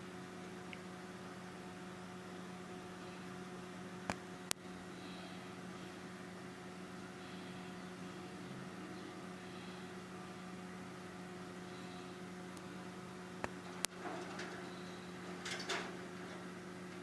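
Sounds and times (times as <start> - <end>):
electrical hum: 0.0 - 17.0.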